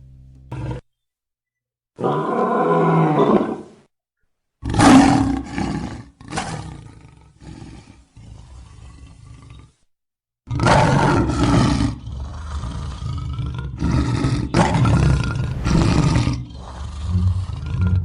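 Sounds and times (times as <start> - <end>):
lion roaring: 15.3 - 16.3.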